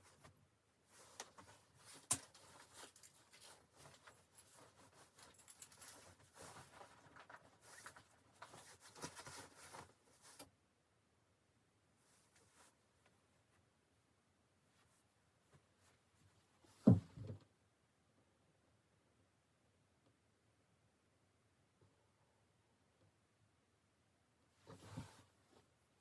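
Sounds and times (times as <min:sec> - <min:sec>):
rustling and scraping handling noises: 0:00.0 - 0:10.5, 0:12.0 - 0:13.6, 0:24.6 - 0:26.0.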